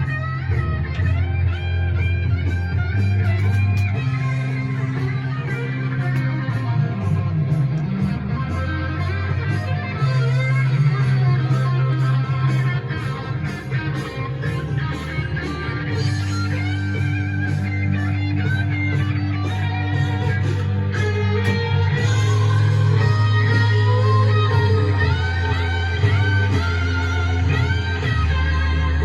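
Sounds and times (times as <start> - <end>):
electric guitar music with bass: 0.0 - 29.0.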